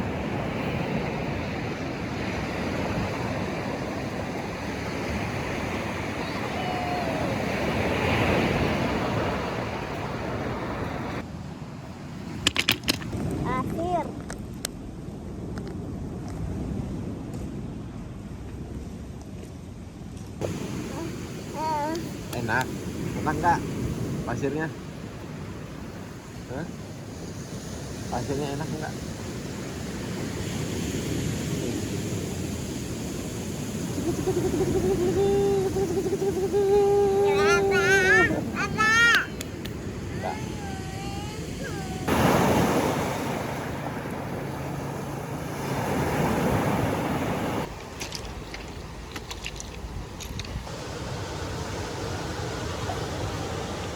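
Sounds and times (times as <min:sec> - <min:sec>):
surf: 0:00.0 - 0:11.2, 0:20.4 - 0:49.4
sea waves washing onto beach: 0:00.0 - 0:12.5, 0:20.4 - 0:53.9
wind on microphone: 0:27.0 - 0:53.9.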